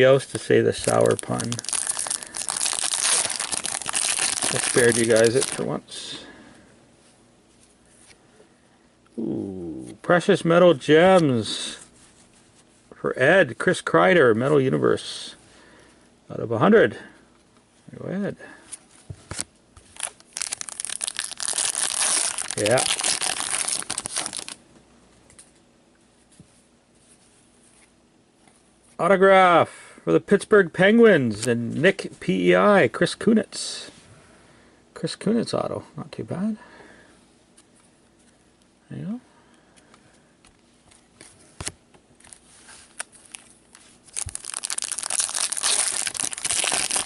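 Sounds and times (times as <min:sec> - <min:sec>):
plastic wrapper tearing and crinkling: 0:00.7 - 0:05.7, 0:19.9 - 0:24.6, 0:42.2 - 0:47.0.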